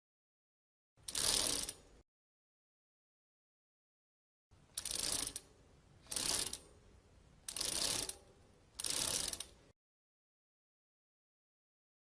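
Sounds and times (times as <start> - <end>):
bicycle freewheel ratcheting: 1.0 - 1.9, 4.7 - 6.7, 7.5 - 8.2, 8.8 - 9.7.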